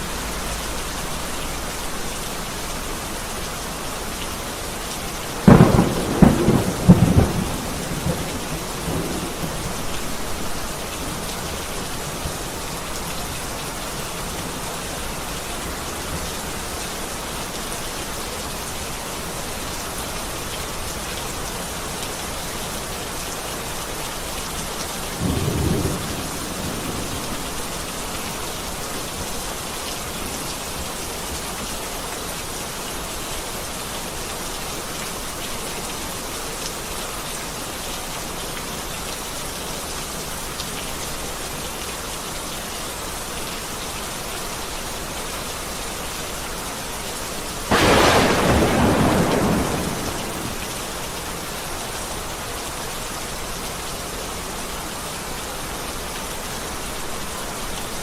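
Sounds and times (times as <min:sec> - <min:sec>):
heavy rain falling: 0:00.0 - 0:58.0
thunder cracking and rumbling: 0:05.4 - 0:12.4, 0:25.2 - 0:27.8, 0:47.7 - 0:50.8.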